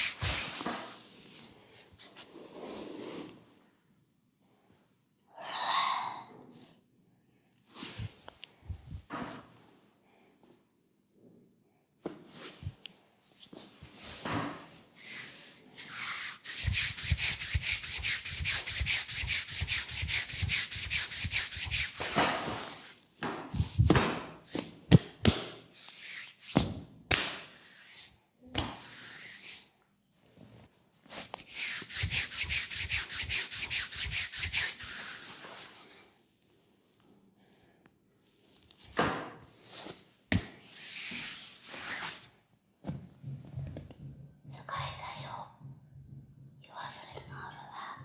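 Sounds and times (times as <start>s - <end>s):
hands rubbing over skin: 0.0s - 2.2s, 15.0s - 23.0s, 31.1s - 36.1s
slaps on skin: 27.1s - 27.4s.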